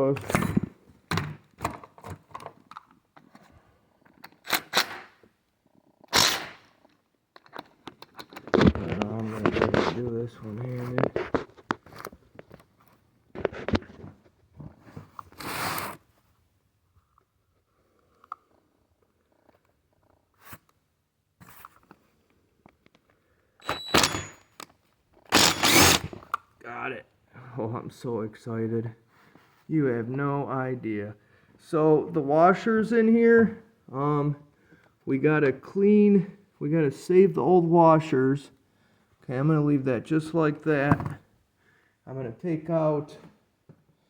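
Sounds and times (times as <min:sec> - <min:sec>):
handling of chainsaw clutch: 0:25.2 - 0:26.4
tool scraping metal: 0:25.4 - 0:26.2.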